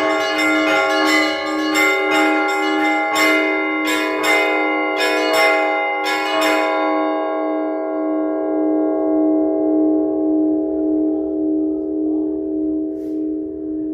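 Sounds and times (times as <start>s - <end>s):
church bells ringing: 0.0s - 13.9s.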